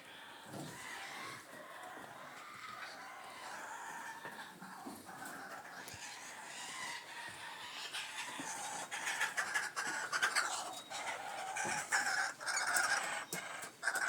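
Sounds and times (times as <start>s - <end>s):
kookaburras calling: 2.4s - 14.0s.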